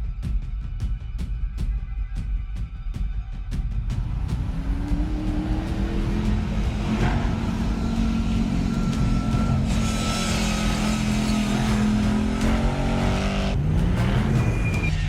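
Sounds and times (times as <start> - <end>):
engine revving: 4.0 - 15.0.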